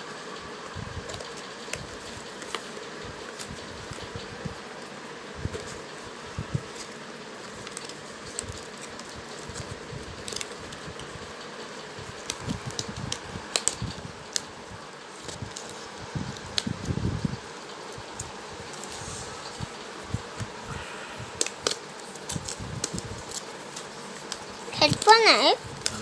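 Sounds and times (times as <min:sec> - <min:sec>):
fan-like hum: 0:00.0 - 0:26.0
packaging clicks and taps: 0:06.7 - 0:11.1, 0:12.1 - 0:14.5, 0:21.4 - 0:25.2.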